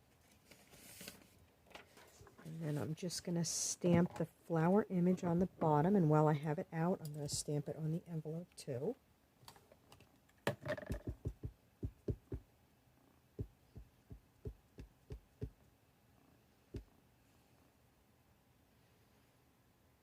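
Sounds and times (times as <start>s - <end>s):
rubber stamp tapping ink pad: 10.8s - 12.4s, 13.4s - 15.6s.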